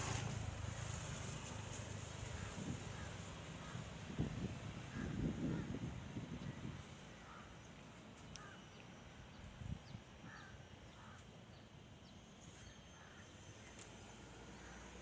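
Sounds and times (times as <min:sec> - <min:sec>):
distant crow caws: 0:02.3 - 0:03.9, 0:04.9 - 0:05.9, 0:07.2 - 0:07.6, 0:08.3 - 0:08.7, 0:10.2 - 0:11.4, 0:12.9 - 0:13.4.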